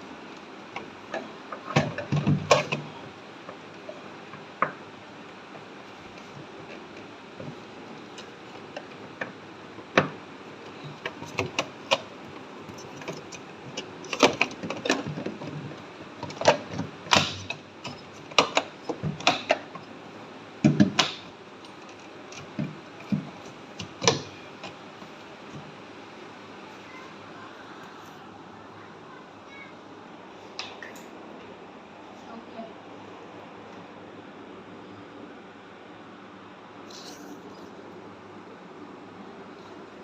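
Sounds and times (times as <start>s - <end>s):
steady background noise: 0.0s - 40.0s
sharp clicks and knocks: 0.4s - 3.6s, 5.5s - 19.9s, 20.6s - 25.7s.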